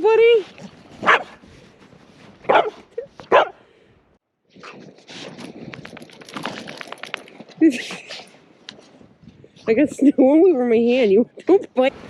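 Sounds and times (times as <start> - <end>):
dog barking: 1.0 - 1.4, 2.5 - 3.6.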